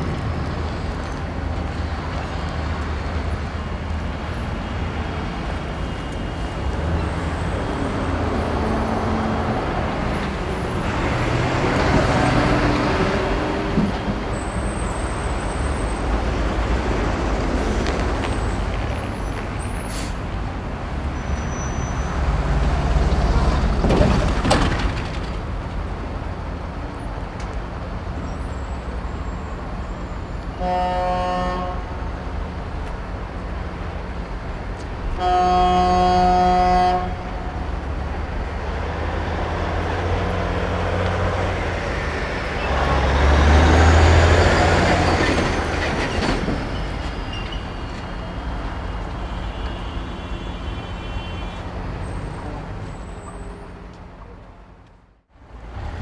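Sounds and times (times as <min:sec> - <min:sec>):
city street traffic: 0:00.0 - 0:56.0
vehicle horn: 0:30.6 - 0:32.0, 0:35.1 - 0:37.7, 0:49.2 - 0:51.8.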